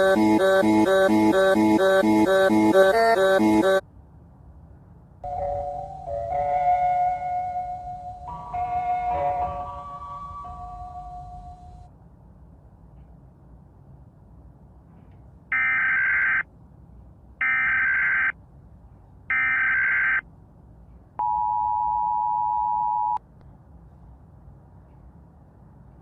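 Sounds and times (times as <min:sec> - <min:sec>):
two-tone attention signal: 0:00.0 - 0:03.8.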